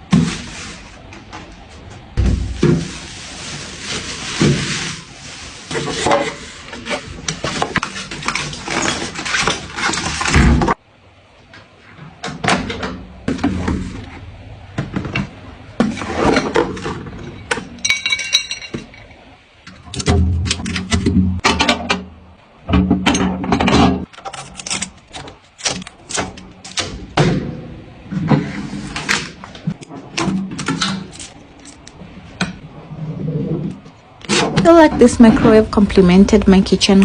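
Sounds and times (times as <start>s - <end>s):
packaging rustling: 2.4s - 10.3s.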